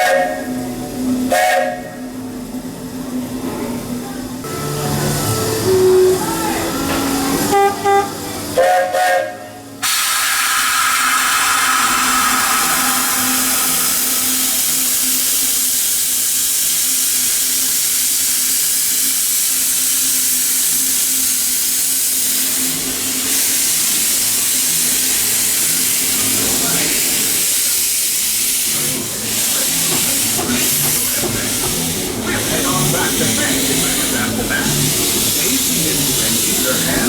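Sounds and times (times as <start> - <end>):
steam venting hiss: 8.3 - 37.0.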